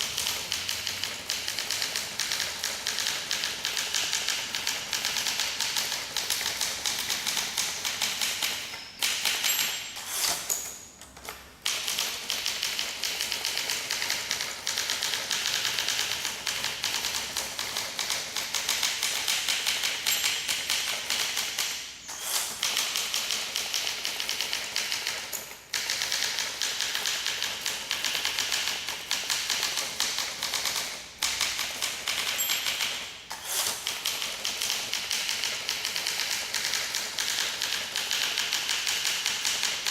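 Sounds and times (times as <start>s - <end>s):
typewriter key strikes: 22.5s - 39.9s.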